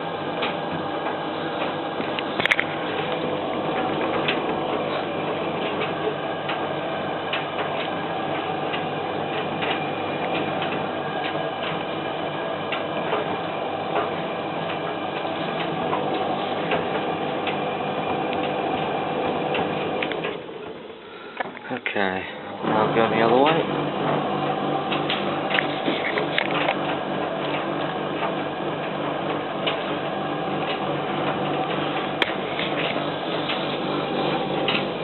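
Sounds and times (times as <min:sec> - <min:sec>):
tumble dryer humming: 0:00.0 - 0:35.0
light clicks of dryer drum: 0:07.3 - 0:11.9, 0:12.7 - 0:18.9, 0:24.9 - 0:30.0.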